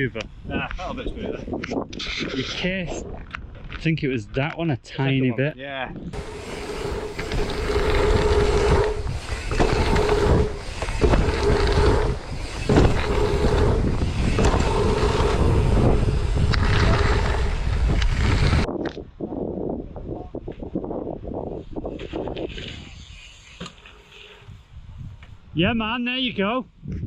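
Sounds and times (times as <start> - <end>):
wind buffeting microphone: 0.0 - 4.0, 5.8 - 23.2, 24.4 - 25.9, 26.7 - 27.0
bike tyres rumbling on dirt: 6.1 - 18.8, 20.6 - 25.4.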